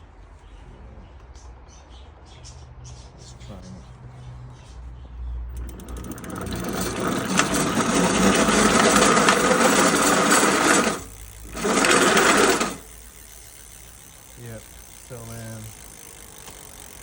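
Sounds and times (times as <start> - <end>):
motor gears clattering and grinding: 5.5 - 17.0.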